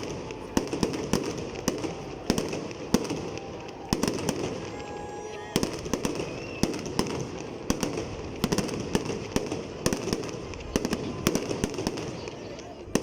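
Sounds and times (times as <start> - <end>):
fireworks bangs and pops: 0.0 - 13.0.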